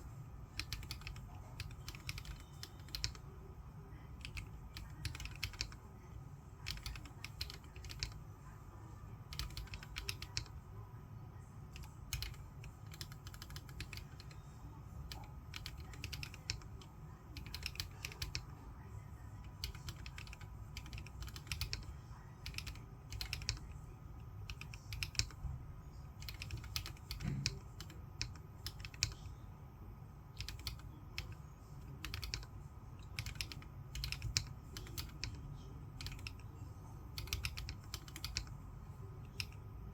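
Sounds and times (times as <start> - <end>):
mechanical keyboard typing: 0.4 - 5.9, 6.6 - 8.2, 9.2 - 10.6, 11.7 - 25.5, 26.2 - 29.4, 30.3 - 39.9.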